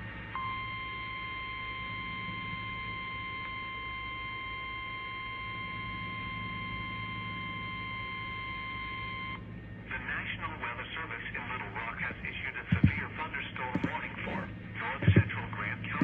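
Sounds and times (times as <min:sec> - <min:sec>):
steady high alarm beep: 0:00.0 - 0:09.5
low electrical hum: 0:00.0 - 0:16.0.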